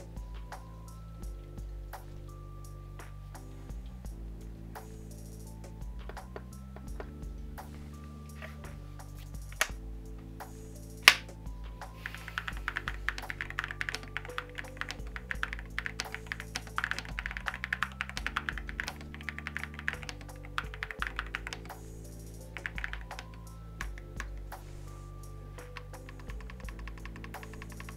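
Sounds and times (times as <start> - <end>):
background music: 0.0 - 27.9
sharp click: 11.0 - 11.3
mechanical keyboard typing: 12.0 - 21.8, 22.6 - 24.4, 25.7 - 27.9.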